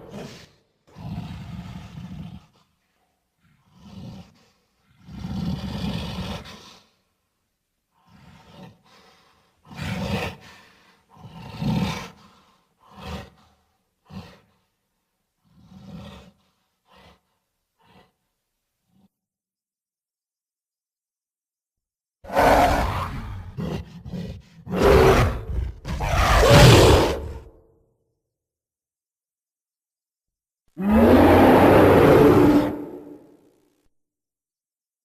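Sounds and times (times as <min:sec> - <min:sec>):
ape roars: 0:22.3 - 0:27.6, 0:30.8 - 0:33.4.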